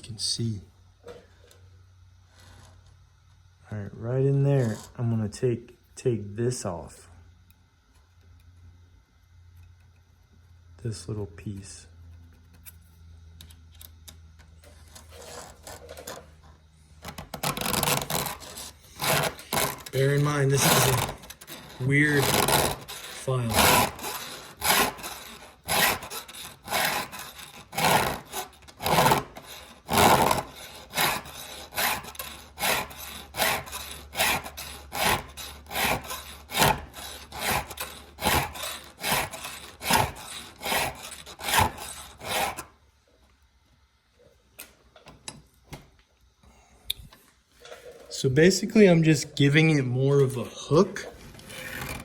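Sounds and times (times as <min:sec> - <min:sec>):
file rasping on metal: 0:04.6 - 0:05.0, 0:17.4 - 0:42.7, 0:51.4 - 0:52.0.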